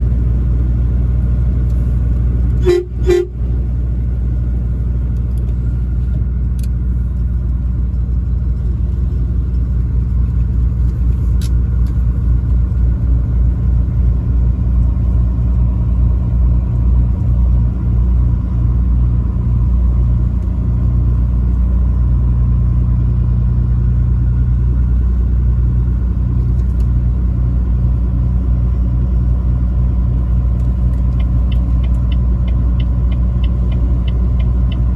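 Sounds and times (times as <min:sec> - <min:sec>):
truck engine and road rumble: 0:00.0 - 0:34.9
truck horn toots: 0:02.6 - 0:03.5.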